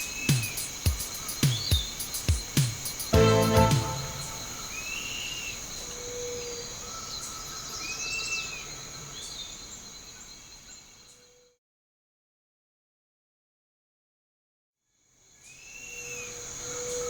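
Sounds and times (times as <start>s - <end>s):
insects trilling: 0.0s - 3.2s
music chord: 3.1s - 4.7s.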